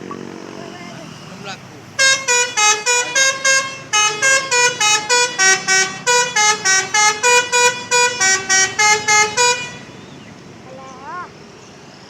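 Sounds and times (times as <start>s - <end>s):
multi-tone musical bus horn: 2.0s - 10.0s.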